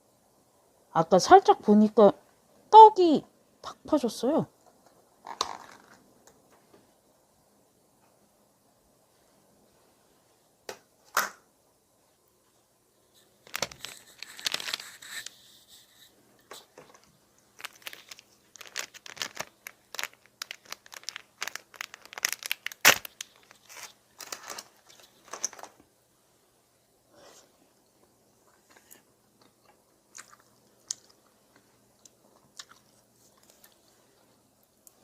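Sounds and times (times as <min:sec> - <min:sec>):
plastic packaging crinkling: 0:13.4 - 0:15.5, 0:16.6 - 0:25.8.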